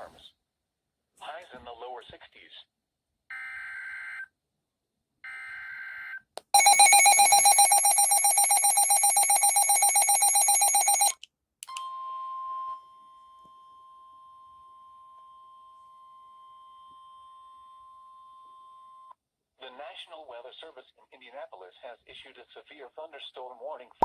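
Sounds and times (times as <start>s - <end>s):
rapidly pulsing bell ringing: 6.6s - 11.1s
steady alert tone: 6.6s - 11.1s.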